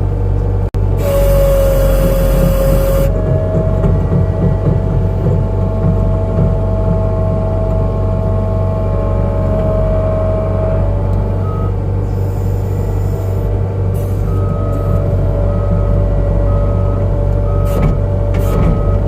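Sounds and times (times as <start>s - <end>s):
diesel engine running with whine: 0.0s - 19.0s.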